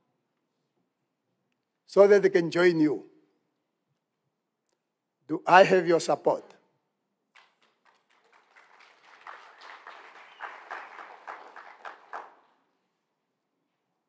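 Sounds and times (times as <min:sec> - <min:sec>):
distant audience applauding: 0:07.4 - 0:12.6.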